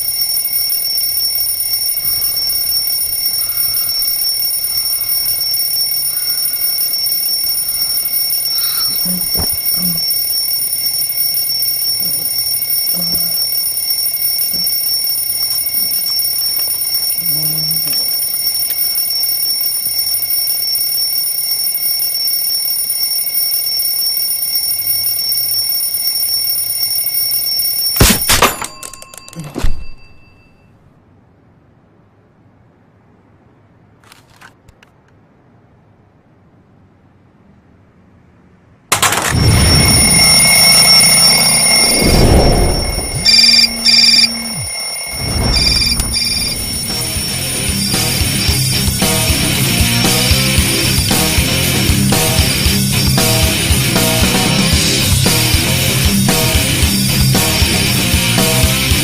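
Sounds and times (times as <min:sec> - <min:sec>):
alarm clock ringing: 0:00.0 - 0:30.7, 0:38.9 - 0:59.0.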